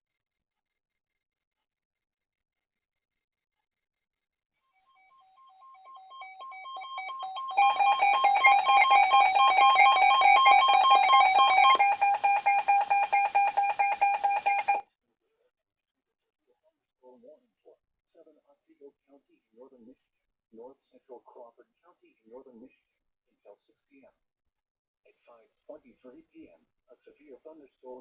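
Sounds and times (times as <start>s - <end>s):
pulsed alarm beeping: 4.8s - 14.8s.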